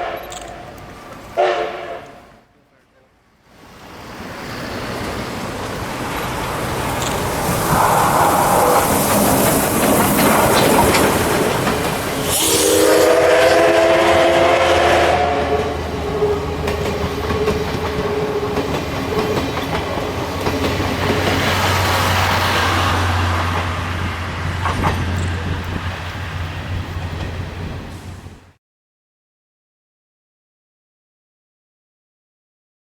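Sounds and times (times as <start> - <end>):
steam whistle blast: 0.0 - 0.7, 1.4 - 2.3, 12.2 - 16.6
steam locomotive rumble and rail clatter: 0.0 - 28.6.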